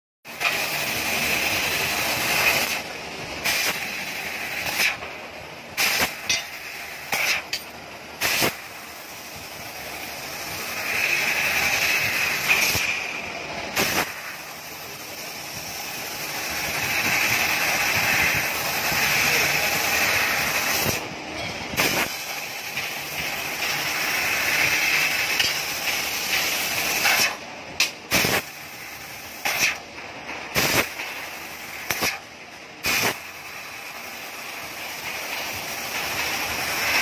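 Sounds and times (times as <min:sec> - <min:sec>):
gas hissing from laser cutter: 0:00.3 - 0:21.1, 0:21.7 - 0:29.9, 0:30.5 - 0:37.0
short sharp bursts: 0:05.8 - 0:07.6, 0:21.8 - 0:29.8, 0:30.5 - 0:37.0.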